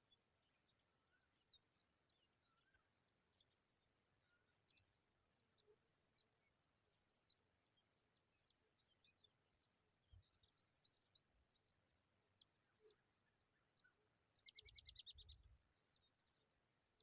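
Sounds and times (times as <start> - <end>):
faint high bird chirps: 0.0 - 17.0.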